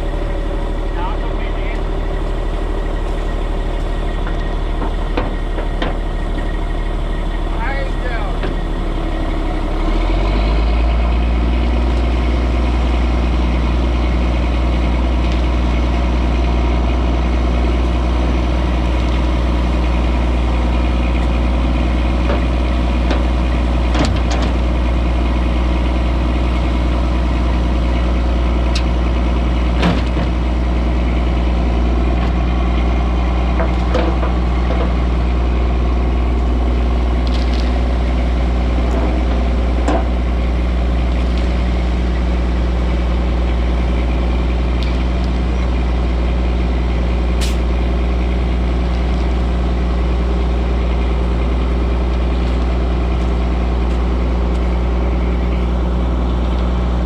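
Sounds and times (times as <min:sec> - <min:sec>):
engine running: 0:00.0 - 0:57.0.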